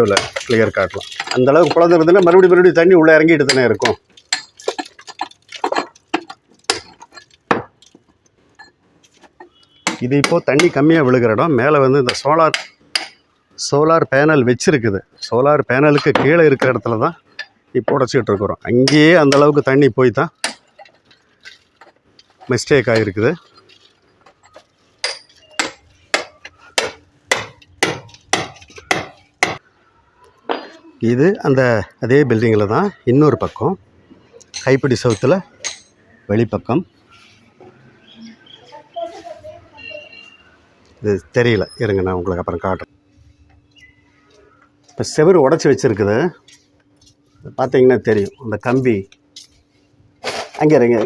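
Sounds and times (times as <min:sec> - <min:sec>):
hammer striking chisel on concrete: 0:03.5 - 0:07.7, 0:09.5 - 0:10.9, 0:12.1 - 0:13.2, 0:18.8 - 0:19.7, 0:25.0 - 0:29.6.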